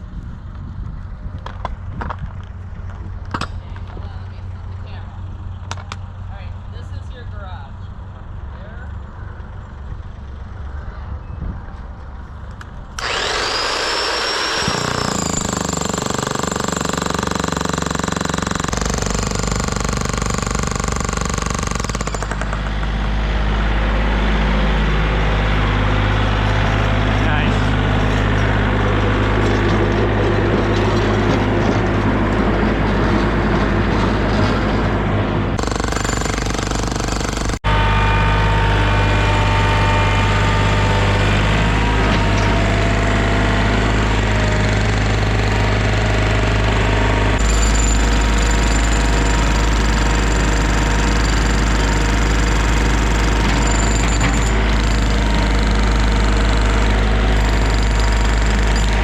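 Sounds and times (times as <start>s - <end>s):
tractor engine running under load: 22.3s - 35.6s.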